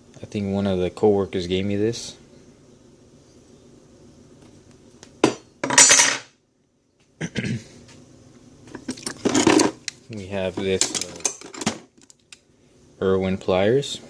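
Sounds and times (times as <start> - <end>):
metal tools clinking in toolbox: 5.6 - 6.3.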